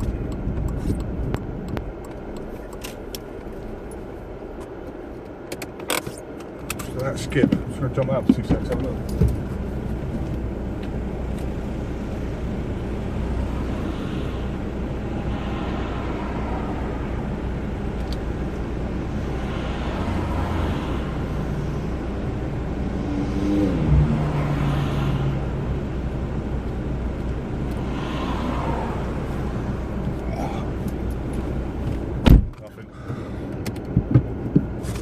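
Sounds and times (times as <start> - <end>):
car engine idling: 0.0 - 23.1, 24.2 - 35.0
thump: 32.2 - 32.6.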